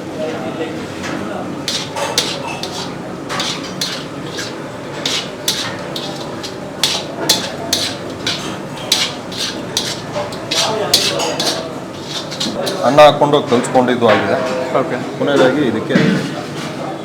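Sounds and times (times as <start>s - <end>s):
spoon scraping cooking vessel: 1.6s - 13.2s.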